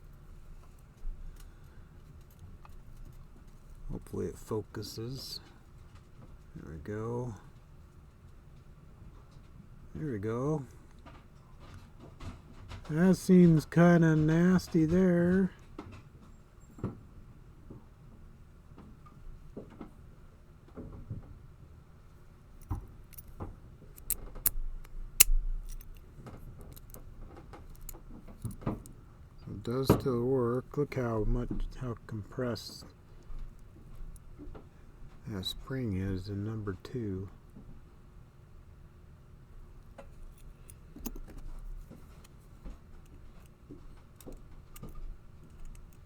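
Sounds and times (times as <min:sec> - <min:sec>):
padlock metallic clicks: 0:22.6 - 0:26.0, 0:26.6 - 0:27.1, 0:27.7 - 0:28.6, 0:44.2 - 0:46.0.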